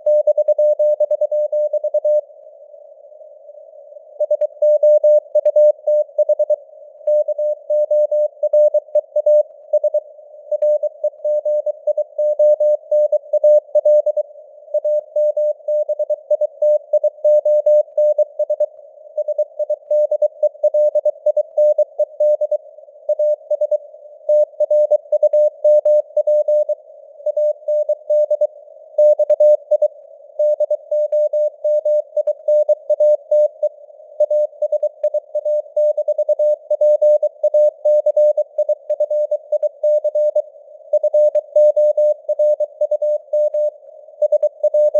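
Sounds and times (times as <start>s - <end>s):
morse code beeps: 41.0s - 44.9s.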